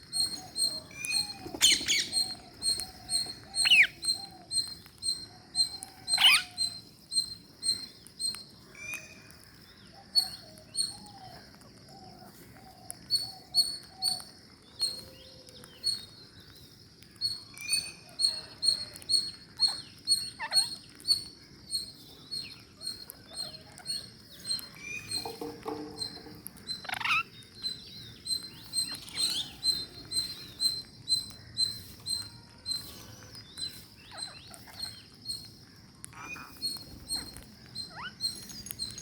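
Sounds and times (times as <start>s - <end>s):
parrots chirping: 0.0s - 9.2s, 17.2s - 39.0s.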